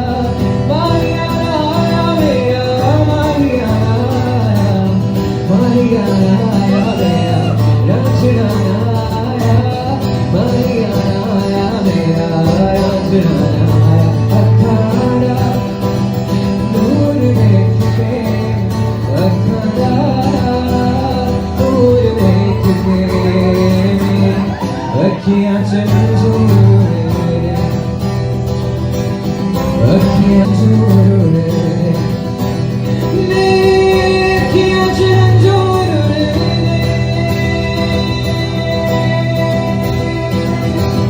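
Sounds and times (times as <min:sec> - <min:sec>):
person singing: 0:00.0 - 0:28.2, 0:29.7 - 0:41.0
bass line: 0:00.0 - 0:41.0
guitar: 0:00.0 - 0:41.0.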